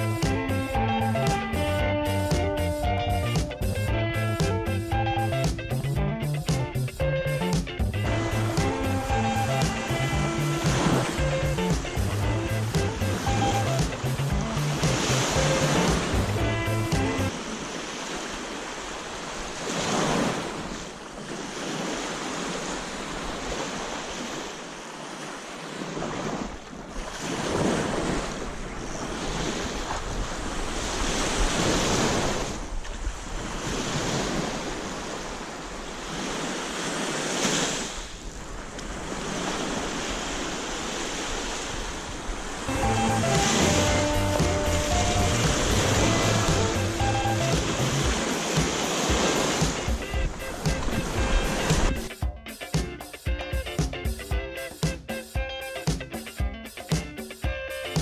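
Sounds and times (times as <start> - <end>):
waves washing onto beach: 7.4 - 52.1
wind on microphone: 7.9 - 17.4, 26.0 - 36.6, 37.7 - 52.1.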